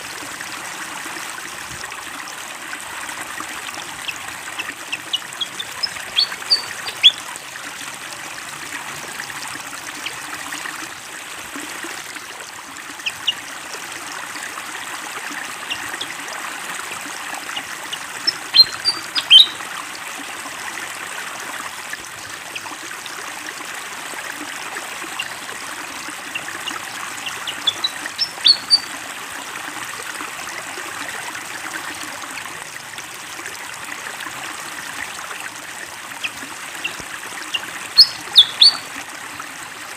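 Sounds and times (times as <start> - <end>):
flowing water: 0.0 - 39.9
bird chirping: 4.9 - 7.2, 18.2 - 19.6, 26.4 - 28.9, 36.8 - 38.8.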